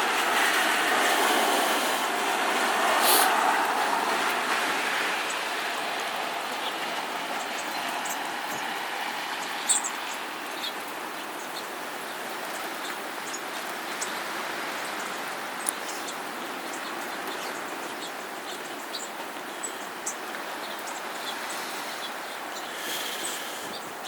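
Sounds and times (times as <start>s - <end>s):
steady rushing noise: 0.0s - 10.6s
small birds chirping: 4.8s - 24.0s.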